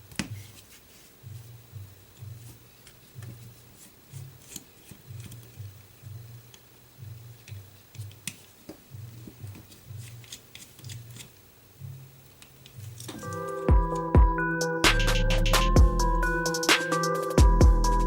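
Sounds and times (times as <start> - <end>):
quiet low pulse: 13.7 - 16.5.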